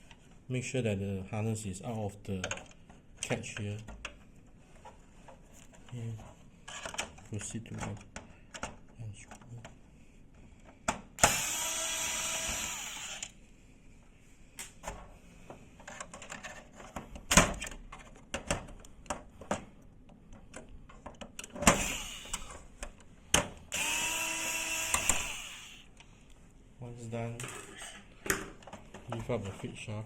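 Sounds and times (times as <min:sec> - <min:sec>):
electric screwdriver running: 0:11.2 - 0:13.3, 0:21.7 - 0:22.5, 0:23.7 - 0:25.9.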